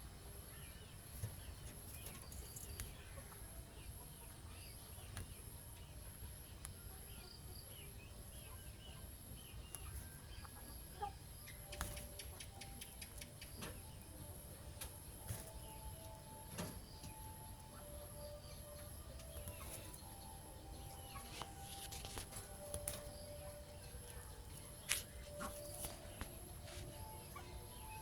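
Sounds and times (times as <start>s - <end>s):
faint bird chirps: 0.3s - 28.0s.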